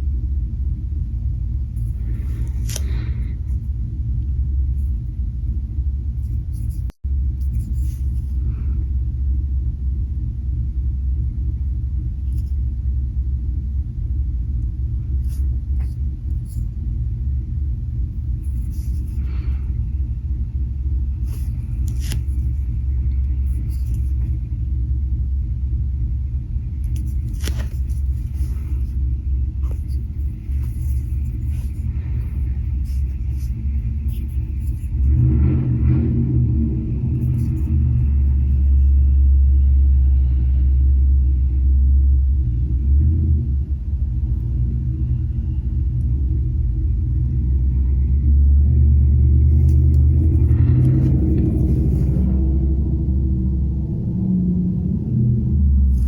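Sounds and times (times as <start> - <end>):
low rumble: 0.0 - 56.0
markers scratching on paper: 6.2 - 8.4, 15.1 - 16.8, 17.7 - 19.7, 21.1 - 24.4, 26.8 - 35.6, 37.0 - 39.0, 49.5 - 52.4.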